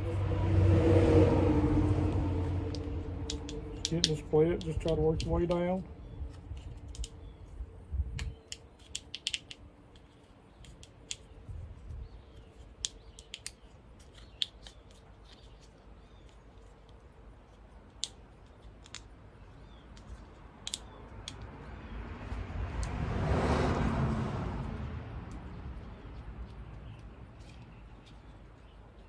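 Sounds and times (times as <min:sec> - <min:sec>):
plastic clicks and handling: 0:02.7 - 0:05.7, 0:06.3 - 0:11.4, 0:12.3 - 0:21.7.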